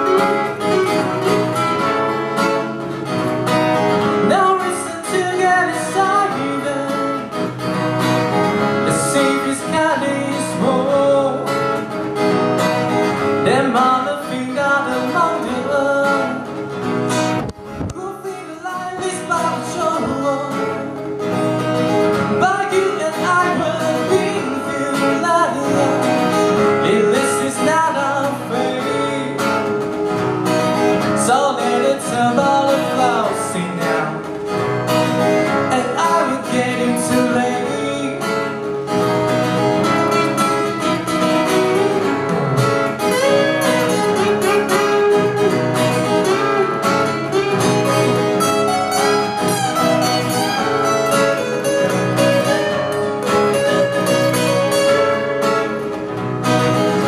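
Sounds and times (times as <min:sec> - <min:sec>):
strummed acoustic guitar: 0:00.0 - 0:57.0
person singing: 0:04.1 - 0:07.4, 0:08.7 - 0:11.9, 0:13.4 - 0:16.6, 0:17.9 - 0:21.2, 0:22.2 - 0:29.9, 0:31.0 - 0:34.4, 0:35.2 - 0:40.2.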